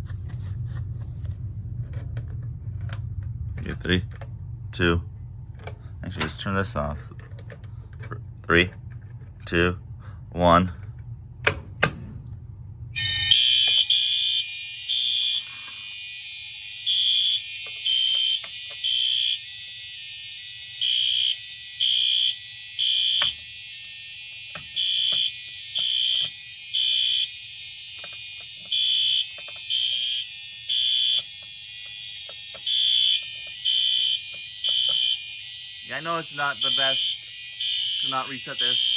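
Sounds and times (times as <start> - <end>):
steady high alarm tone: 0.0 - 11.8, 12.5 - 38.9
fire alarm beeps: 13.0 - 38.9.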